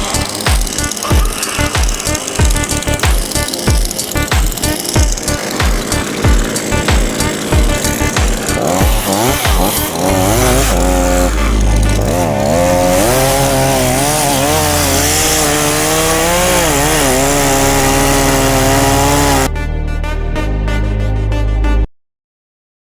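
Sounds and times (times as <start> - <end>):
electronic music with beat: 0.0 - 13.4
chainsaw cutting wood: 0.0 - 19.5.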